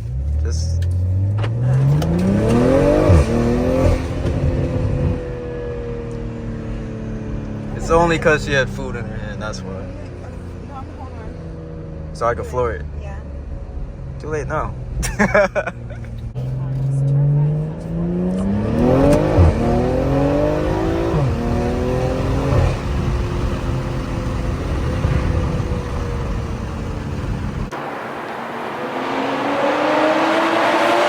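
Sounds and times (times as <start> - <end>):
car engine accelerating: 0.0 - 31.0
second engine rising: 16.5 - 31.0.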